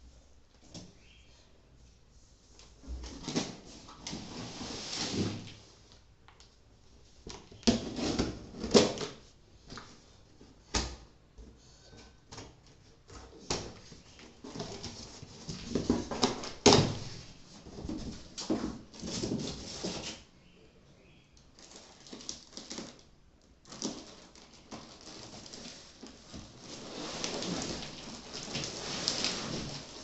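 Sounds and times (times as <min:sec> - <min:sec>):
mattress wrapping rustling: 0:24.0 - 0:30.0.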